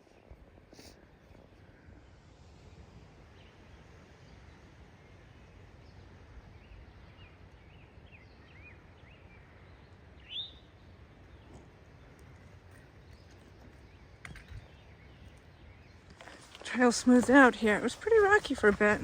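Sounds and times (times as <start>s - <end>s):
low background noise: 0.0s - 19.0s
songbird chirping: 5.8s - 19.0s.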